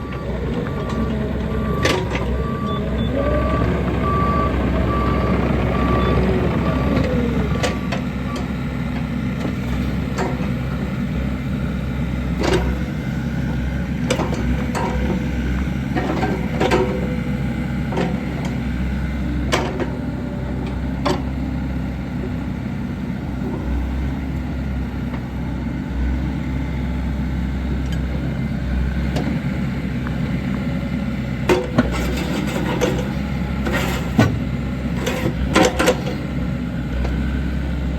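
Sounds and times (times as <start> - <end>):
beeping alarm: 0.0 - 8.5
excavator diesel engine running: 0.0 - 37.9.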